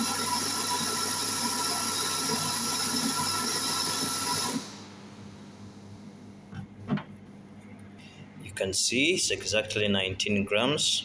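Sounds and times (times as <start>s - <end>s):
electric coffee grinder running: 0.0s - 5.0s.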